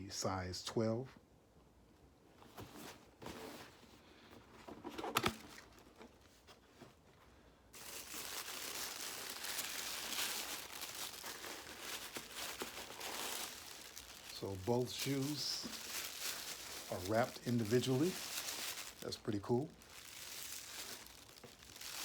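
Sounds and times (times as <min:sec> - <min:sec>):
wrapping crinkling and crumpling: 0:07.7 - 0:22.0
paper rustling: 0:07.8 - 0:22.0.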